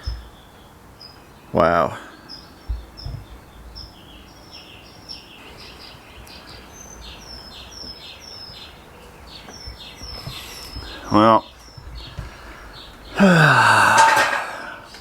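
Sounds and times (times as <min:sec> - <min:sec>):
birds chirping: 0:00.0 - 0:15.0
low thumps: 0:02.7 - 0:04.0.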